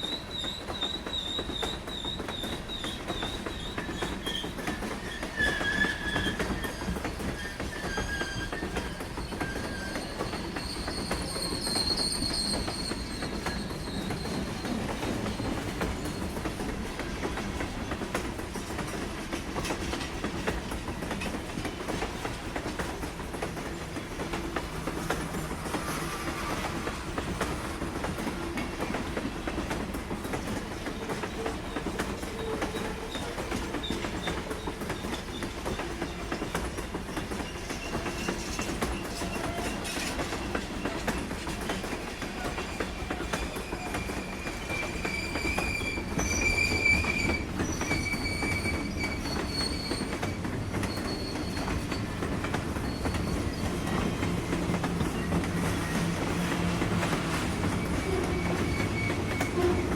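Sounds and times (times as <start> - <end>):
train wheels rumbling on rails: 0.0 - 59.9
high wheel squeals: 0.1 - 16.7, 42.4 - 59.9.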